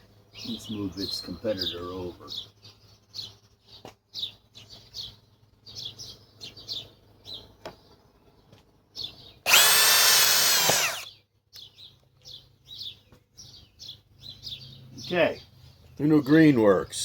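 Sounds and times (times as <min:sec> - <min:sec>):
birds chirping: 0:00.0 - 0:17.0
cordless drill motor whine: 0:09.5 - 0:11.1.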